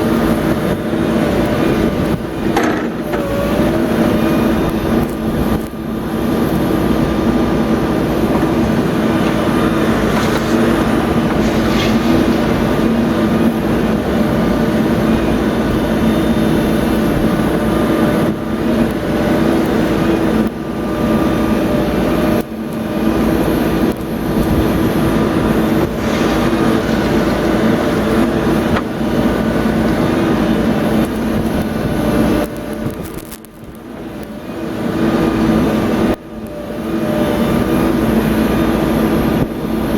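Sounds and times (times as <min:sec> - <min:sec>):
backhoe diesel engine running: 0:00.0 - 0:39.9.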